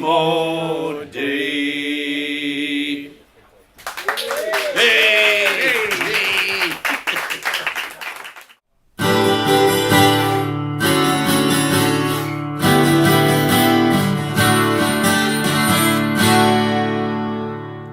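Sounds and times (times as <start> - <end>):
acoustic guitar strumming chords: 9.0 - 17.9.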